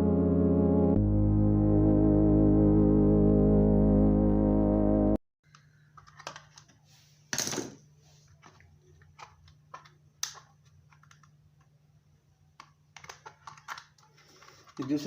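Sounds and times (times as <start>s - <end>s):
plastic parts clicking: 5.5s - 6.8s, 8.4s - 11.7s, 12.5s - 15.0s.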